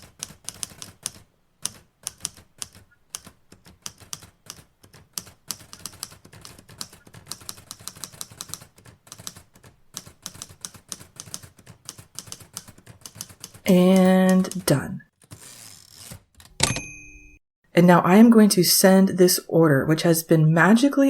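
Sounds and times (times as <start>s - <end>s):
typewriter keys clacking: 0.0s - 16.9s.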